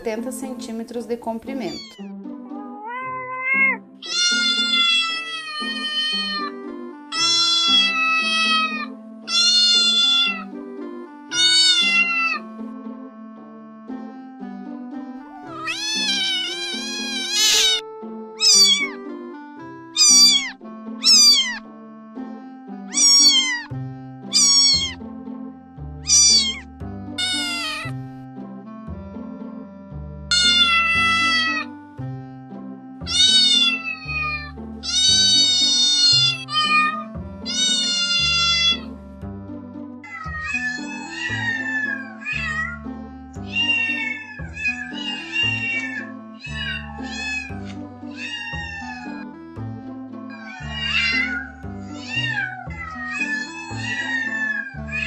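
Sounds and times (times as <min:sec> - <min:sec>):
cat meowing: 0:01.6 - 0:10.5, 0:11.3 - 0:12.5, 0:15.3 - 0:17.8, 0:18.4 - 0:19.0, 0:20.0 - 0:21.6, 0:22.9 - 0:23.7, 0:24.3 - 0:25.0, 0:26.0 - 0:27.9, 0:30.3 - 0:31.7, 0:33.1 - 0:38.9, 0:40.0 - 0:49.3, 0:50.3 - 0:55.0
background music with bass: 0:17.4 - 0:40.8, 0:49.3 - 0:50.3.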